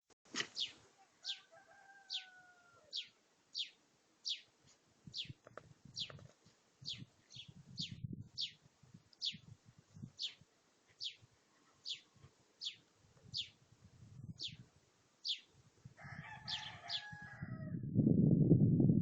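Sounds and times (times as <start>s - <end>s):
faint rooster crow: 1.0s - 3.2s, 15.9s - 17.9s.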